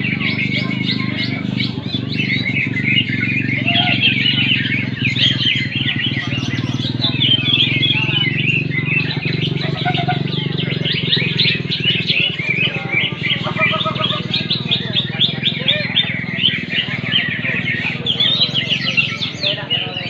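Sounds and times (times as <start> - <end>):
bird rapid chirping song: 0.0 - 20.0
other songbirds singing: 0.0 - 20.0.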